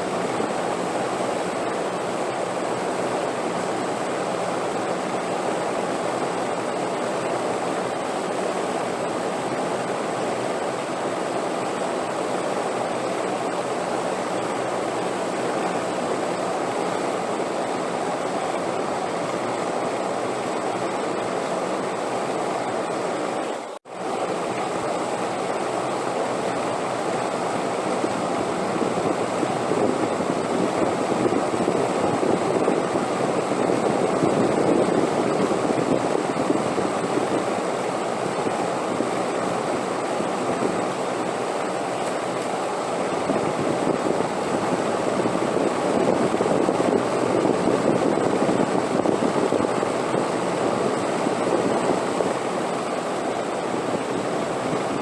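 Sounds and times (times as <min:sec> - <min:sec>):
rushing wind: 0:24.0 - 0:55.0.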